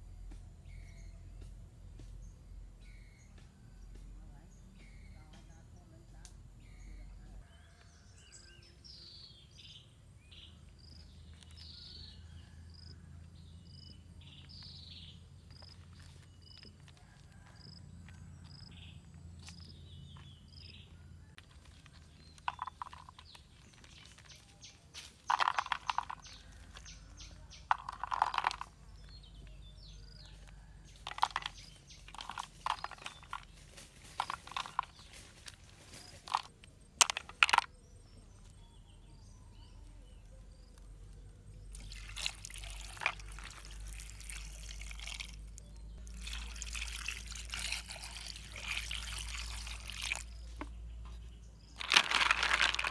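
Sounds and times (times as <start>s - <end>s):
water splashing and pouring: 41.7s - 45.4s, 46.0s - 50.6s.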